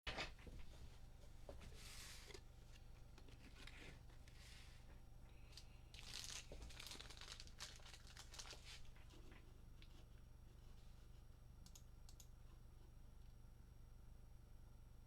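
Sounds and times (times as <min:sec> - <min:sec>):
plastic packaging crinkling: 0:05.9 - 0:09.4.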